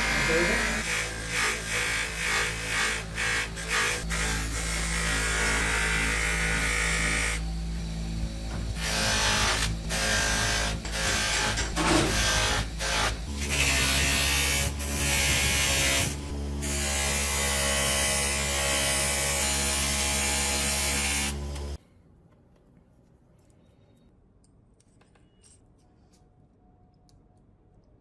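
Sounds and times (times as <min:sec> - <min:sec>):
buffing machine polishing metal: 0:00.0 - 0:21.7.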